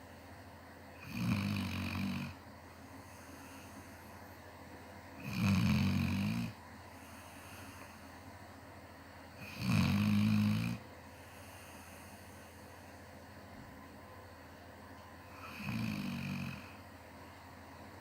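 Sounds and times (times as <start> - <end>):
low-pitched snores: 1.0 - 2.4, 5.2 - 6.6, 9.4 - 10.8, 15.3 - 16.8
quiet breathing: 2.2 - 4.6, 6.4 - 8.4, 10.7 - 13.3.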